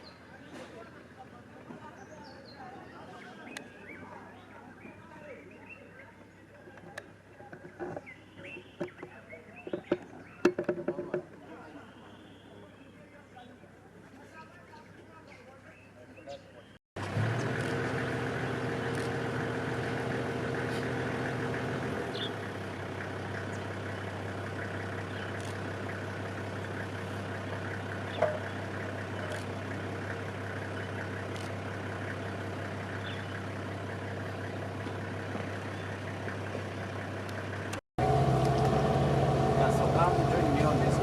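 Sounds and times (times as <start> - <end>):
engine running steadily: 17.0 - 41.0.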